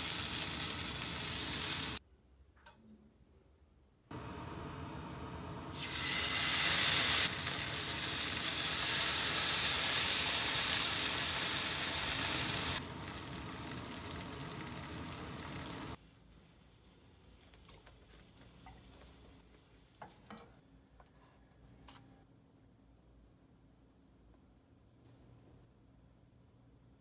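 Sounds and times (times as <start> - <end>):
food sizzling in a pan: 0.0 - 2.0, 5.7 - 16.0.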